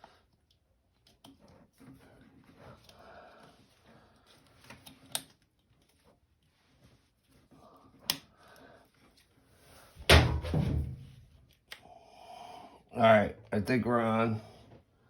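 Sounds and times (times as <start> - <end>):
heavy metallic thunk: 10.1 - 11.1.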